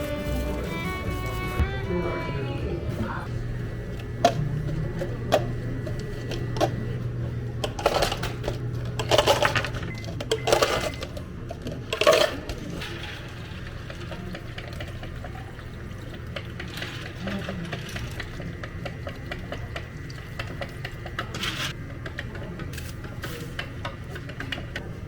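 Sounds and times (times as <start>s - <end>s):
espresso machine pump humming: 0.0s - 25.0s
cups and tools clinking: 4.2s - 15.2s
liquid pouring and splashing: 12.0s - 21.7s.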